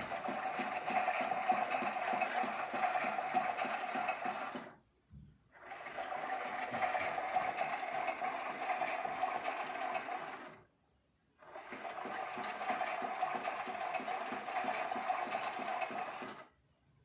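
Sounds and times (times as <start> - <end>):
toy washing machine motor whirring: 0.0 - 4.8, 5.5 - 10.7, 11.4 - 16.5.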